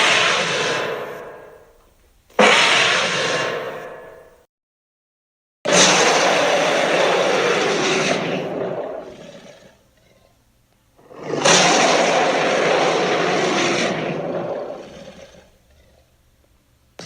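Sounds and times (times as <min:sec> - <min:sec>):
dinosaur roar: 0:00.0 - 0:01.7, 0:02.4 - 0:04.3, 0:05.7 - 0:10.4, 0:11.0 - 0:16.1.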